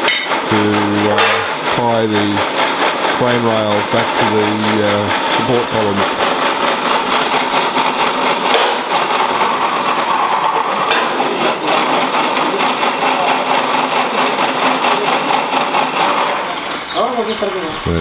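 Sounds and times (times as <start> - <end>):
sharp knocks: 0.0 - 10.0
machine running loudly: 0.0 - 18.0.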